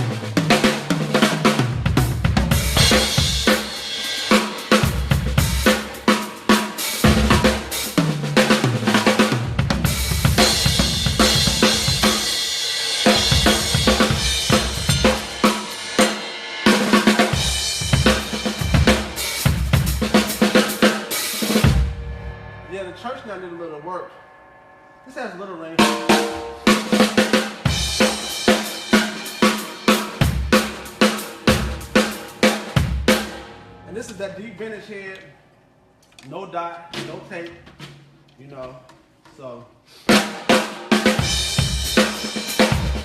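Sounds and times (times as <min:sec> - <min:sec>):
crashing cymbals: 0:02.5 - 0:34.2, 0:41.1 - 0:43.0.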